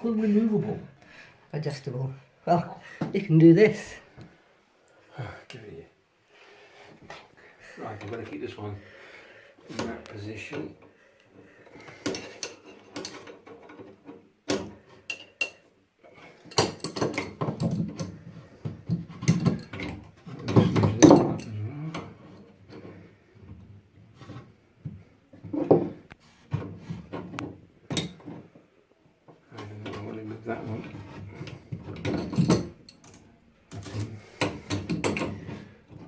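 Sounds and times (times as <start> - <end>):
spanners clinking on metal fittings: 11.8 - 13.9, 16.4 - 18.2, 18.9 - 21.6, 31.9 - 35.4.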